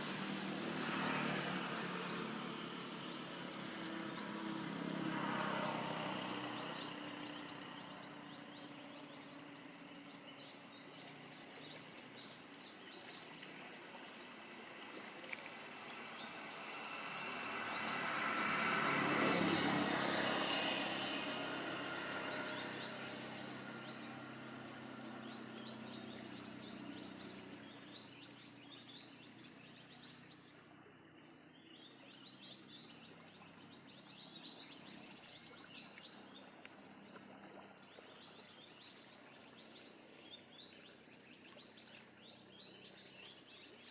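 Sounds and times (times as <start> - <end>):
passing vehicle low hum: 0.0 - 12.6, 13.6 - 30.2
faint outdoor background: 0.0 - 43.9.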